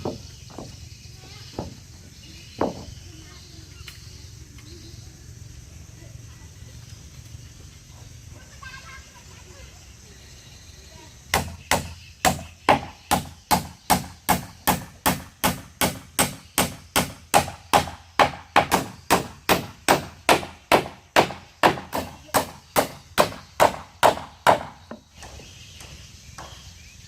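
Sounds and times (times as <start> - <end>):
hand tool striking wood: 0.0 - 0.8, 2.6 - 3.0, 11.3 - 26.6.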